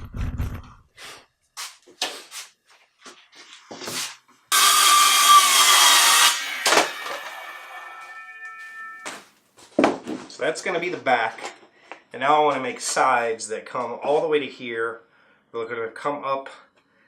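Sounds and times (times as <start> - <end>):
power saw cutting board: 4.5 - 8.8.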